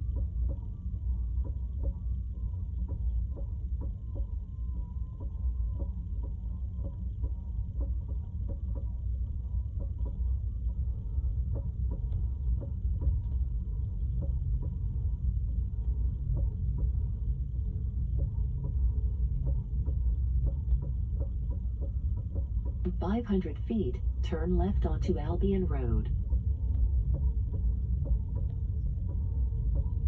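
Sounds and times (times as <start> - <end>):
low cabin rumble: 11.1 - 30.0.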